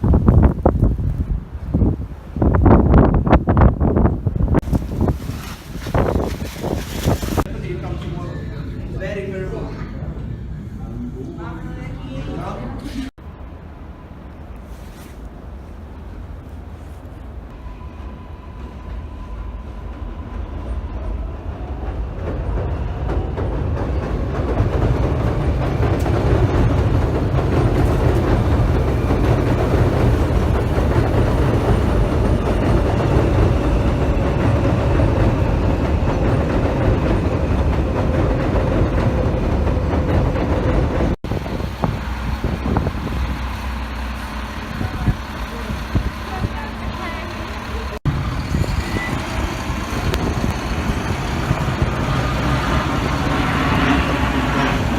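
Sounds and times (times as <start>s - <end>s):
heavy vehicle rumble: 23.0s - 54.9s.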